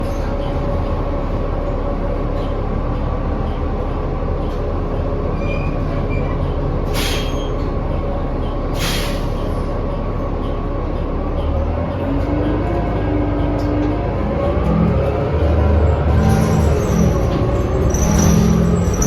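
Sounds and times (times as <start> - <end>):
bus engine whine and rumble: 0.0 - 19.0
short air hisses: 8.8 - 9.3.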